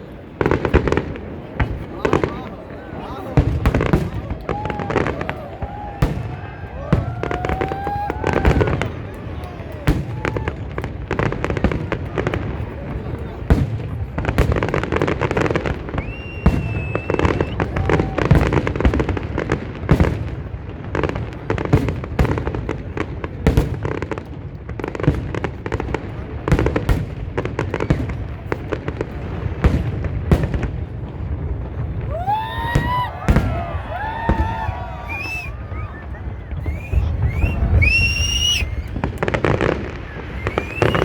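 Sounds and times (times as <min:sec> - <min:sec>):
fireworks bangs and crackles: 0:00.0 - 0:41.0
firework whistle: 0:15.8 - 0:18.4, 0:32.1 - 0:41.0.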